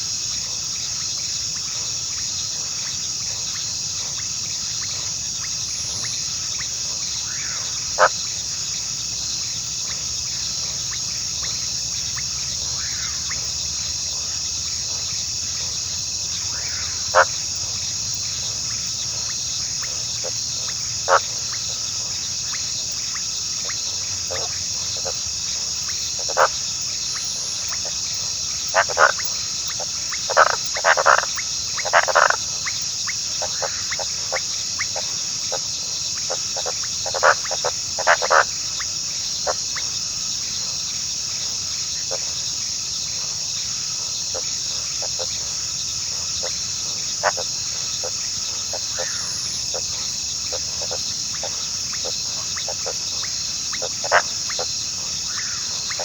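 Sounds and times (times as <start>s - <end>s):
high-pitched insect chorus: 0.0s - 56.0s.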